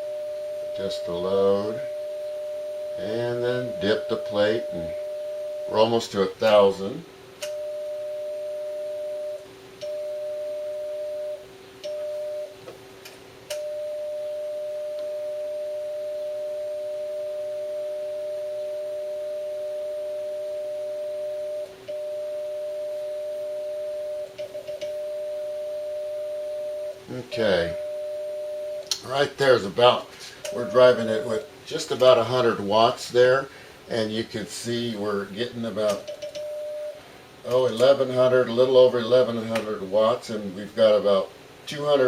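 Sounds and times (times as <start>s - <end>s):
steady sidetone beep: 0.0s - 5.9s, 13.6s - 28.8s, 30.5s - 31.5s, 36.0s - 37.0s
low steady hum: 0.0s - 42.0s.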